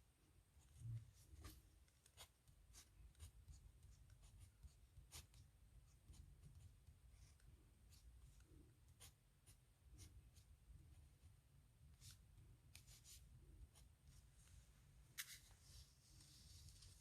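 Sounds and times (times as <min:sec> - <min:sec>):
pen scratching on paper: 0:00.6 - 0:11.3.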